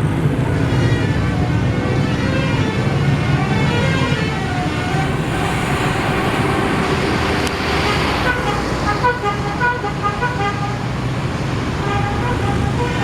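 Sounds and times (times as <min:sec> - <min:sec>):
bus engines and traffic: 0:00.0 - 0:13.0
bus horns playing a tune: 0:07.8 - 0:10.9, 0:11.8 - 0:13.0.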